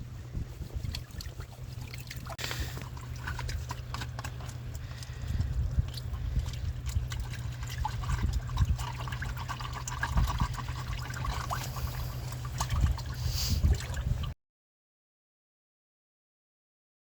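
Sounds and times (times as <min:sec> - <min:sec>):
steady low rumble: 0:00.0 - 0:14.4
water trickling and splashing: 0:00.2 - 0:14.4.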